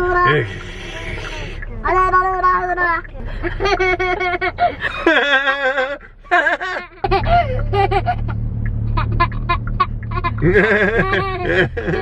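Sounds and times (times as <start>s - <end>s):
children making playful vocal noises: 0.0s - 4.1s.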